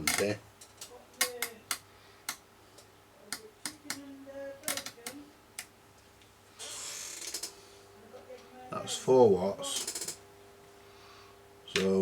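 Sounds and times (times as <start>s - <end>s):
faint steady hum: 0.0s - 12.0s
radio hiss burst: 6.6s - 7.8s.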